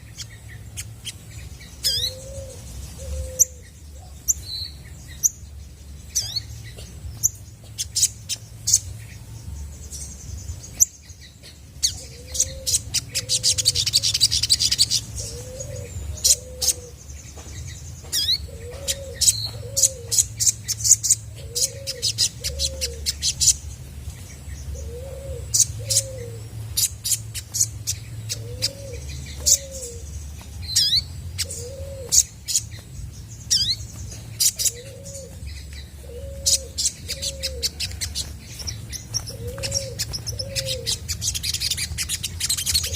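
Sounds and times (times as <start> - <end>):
bird calling with high chips: 24.8 - 42.9.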